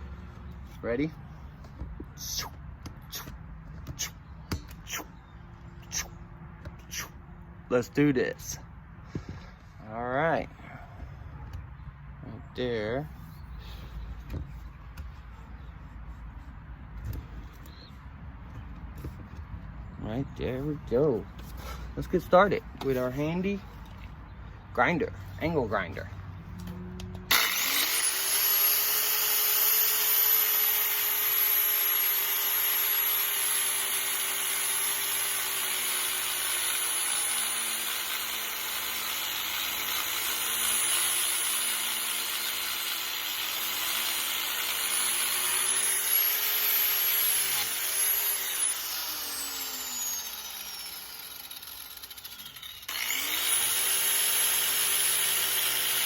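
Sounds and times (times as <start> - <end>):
angle grinder grinding metal: 26.6 - 56.0.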